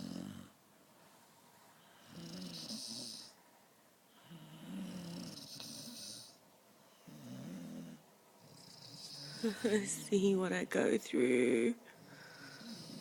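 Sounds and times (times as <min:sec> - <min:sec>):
dog snoring: 0:00.0 - 0:00.6, 0:01.9 - 0:03.4, 0:04.1 - 0:06.4, 0:07.0 - 0:10.0, 0:12.0 - 0:13.0.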